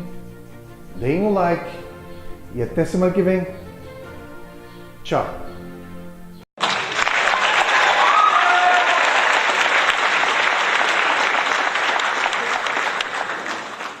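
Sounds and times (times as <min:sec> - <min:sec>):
crowd applauding: 0:06.6 - 0:14.0.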